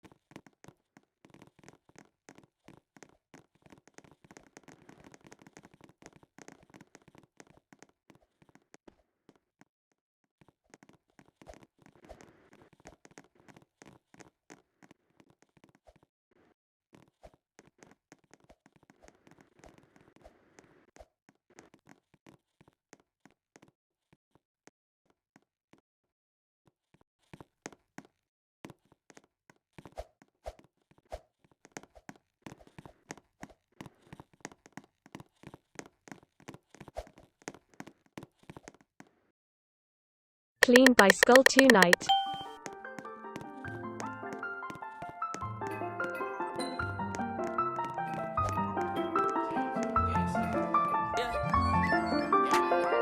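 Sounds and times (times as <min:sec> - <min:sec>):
faint irregular clicks and taps: 0:40.6 - 0:42.8.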